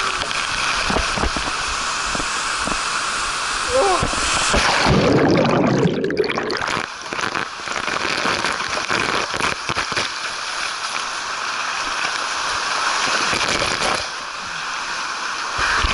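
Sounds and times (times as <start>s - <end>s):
water rushing through a slide: 0.0s - 15.9s.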